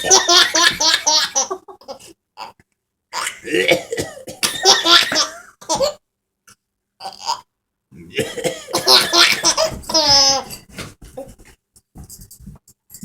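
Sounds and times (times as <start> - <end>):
baby laughing: 0.0 - 2.6, 7.0 - 7.5, 8.7 - 11.4
man fake coughing: 3.2 - 5.4, 8.0 - 9.8.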